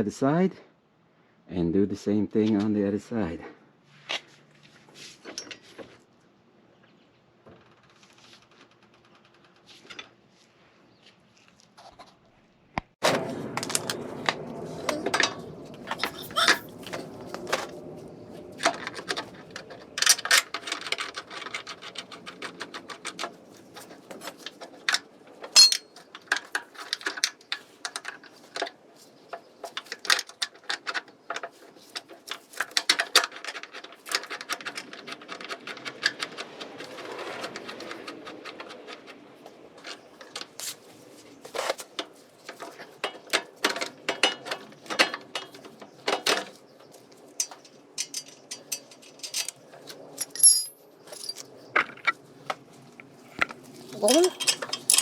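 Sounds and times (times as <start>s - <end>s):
hand tools clicking on metal: 18.6s - 28.7s, 47.3s - 49.6s, 50.2s - 51.5s, 53.4s - 55.0s.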